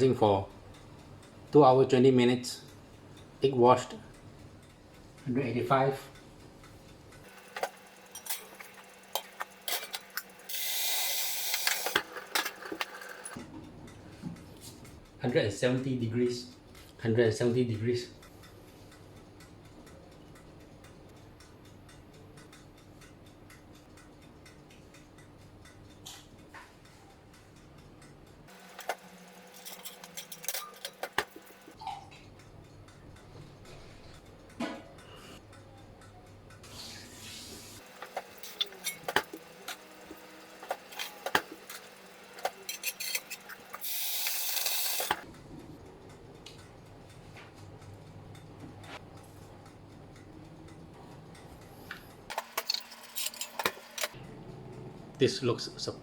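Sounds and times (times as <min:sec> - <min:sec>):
kitchen items clicking and knocking: 0:07.3 - 0:10.4, 0:11.4 - 0:13.4, 0:28.5 - 0:32.1, 0:37.8 - 0:45.2, 0:52.3 - 0:54.2.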